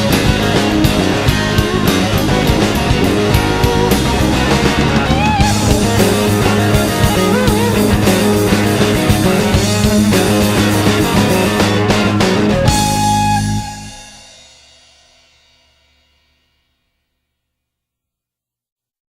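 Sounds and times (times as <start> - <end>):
rock music with guitars: 0.0 - 14.6.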